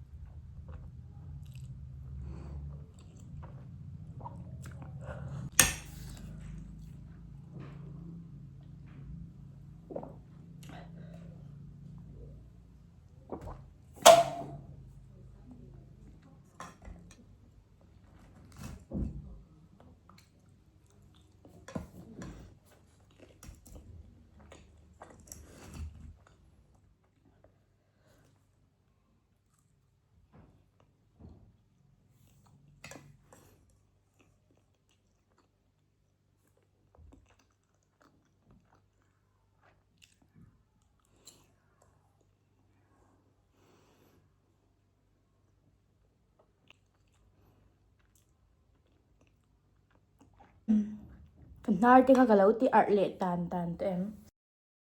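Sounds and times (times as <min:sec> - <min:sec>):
chewing and biting: 0:32.3 - 0:42.4, 0:46.3 - 0:50.6.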